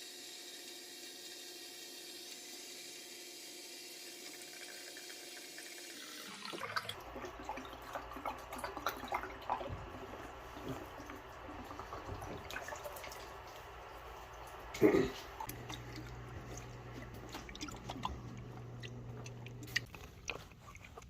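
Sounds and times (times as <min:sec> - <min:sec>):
water hissing from pipes: 0:00.0 - 0:19.9
water splashing: 0:06.3 - 0:21.0.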